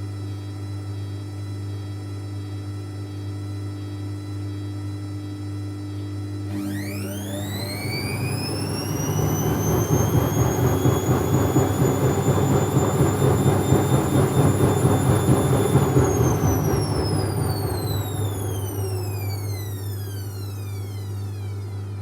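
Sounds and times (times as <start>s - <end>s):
washing machine drum spinning: 6.5s - 21.8s.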